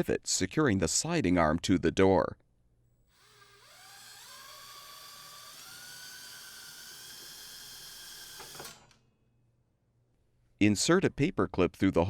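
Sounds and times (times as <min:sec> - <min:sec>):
power drill whining: 0:03.1 - 0:09.0.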